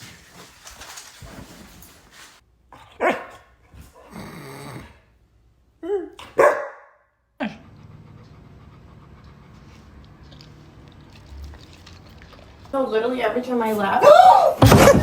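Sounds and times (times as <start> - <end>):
dog barking: 2.9 - 3.4, 6.3 - 7.0
dog growling: 4.0 - 5.1
dog whining: 14.0 - 15.0.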